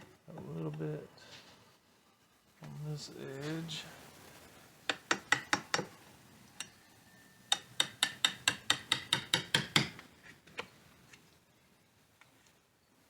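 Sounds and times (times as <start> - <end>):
hammer tapping wood chisel: 4.9 - 5.9, 7.5 - 10.7.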